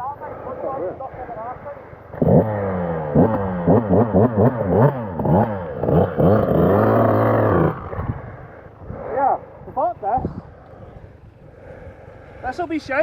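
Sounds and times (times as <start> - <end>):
dirt bike engine revving: 0.0 - 10.6.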